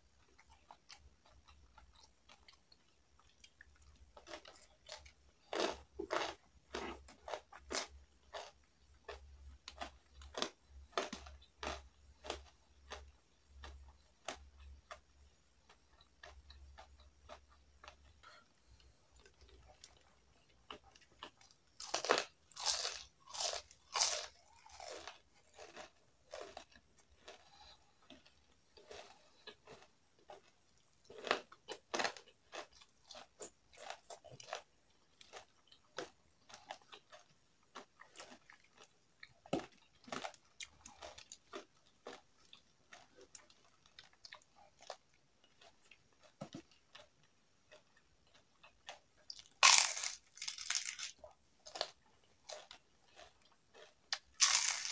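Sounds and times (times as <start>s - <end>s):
crunching and chewing food: 0.0s - 54.9s.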